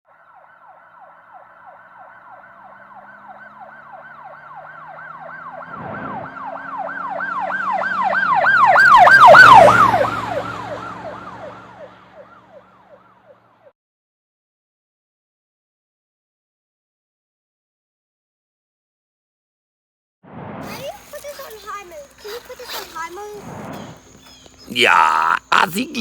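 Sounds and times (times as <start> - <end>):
siren yelping: 0.1 - 13.2
engine and road noise: 0.1 - 13.7, 20.7 - 26.0.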